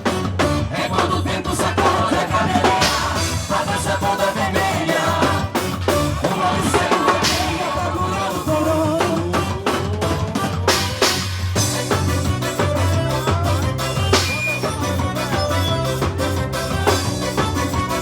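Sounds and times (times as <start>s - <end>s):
bass line: 0.0s - 18.0s
drum kit: 0.0s - 18.0s
person singing: 6.2s - 10.6s, 11.8s - 18.0s.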